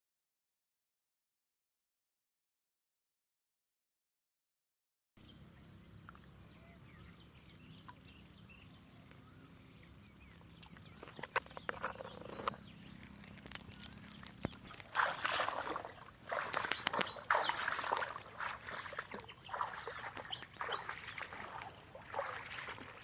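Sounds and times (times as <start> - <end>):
small birds chirping: 5.2 - 23.0.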